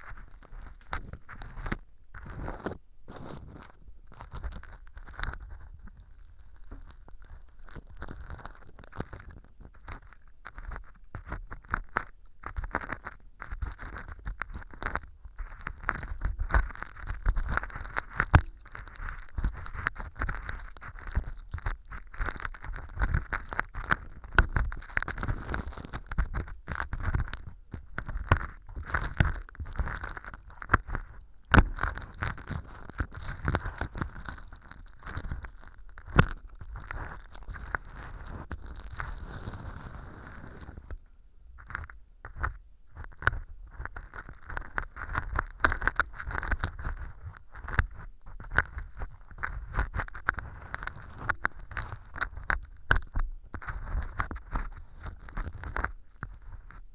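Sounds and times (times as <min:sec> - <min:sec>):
ear pick scraping plastic: 0:00.0 - 0:56.9.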